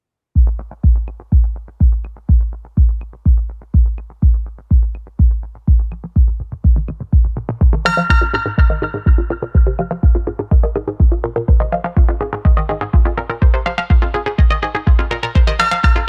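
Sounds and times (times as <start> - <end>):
hi-hat ticks: 0.4 - 11.9
electronic music: 0.4 - 16.0
kick drum beat: 0.4 - 16.0
synth chords: 0.4 - 16.0.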